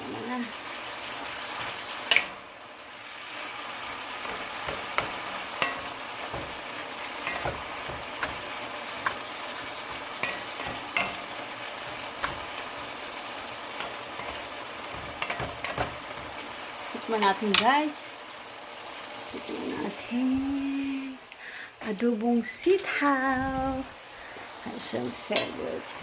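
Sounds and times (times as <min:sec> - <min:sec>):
food sizzling in a pan: 0:00.0 - 0:26.0
utensil scraping a pan: 0:03.8 - 0:16.7.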